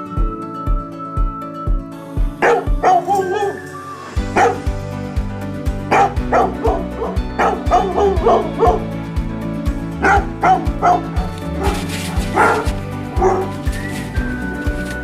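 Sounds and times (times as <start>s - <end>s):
background music with steady beat: 0.0s - 15.0s
dog yipping and barking: 2.4s - 4.7s, 5.9s - 8.9s, 10.0s - 14.2s.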